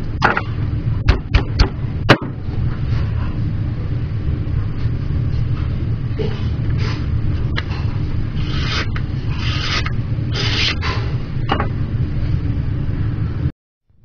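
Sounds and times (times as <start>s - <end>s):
steady low rumble: 0.0s - 14.0s
knife rasping through material: 8.4s - 10.8s.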